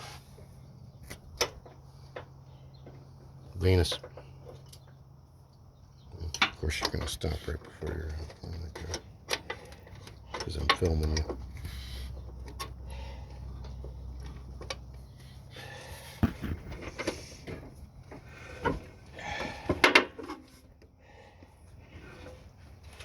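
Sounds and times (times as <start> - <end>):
low steady hum: 0.0 - 23.0
objects knocking and clattering: 16.2 - 17.6.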